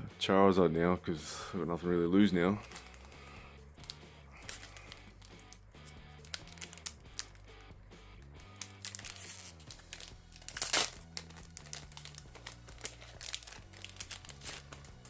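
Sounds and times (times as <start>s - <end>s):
soft background music: 0.0s - 15.0s
foil wrapper ripping: 2.6s - 5.6s, 6.2s - 7.6s, 8.5s - 15.0s
foil wrapper crinkling: 2.6s - 7.6s, 8.5s - 15.0s.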